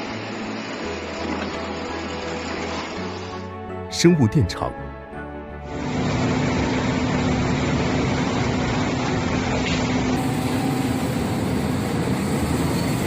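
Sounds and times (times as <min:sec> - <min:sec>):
excavator rumbling: 0:05.8 - 0:13.0.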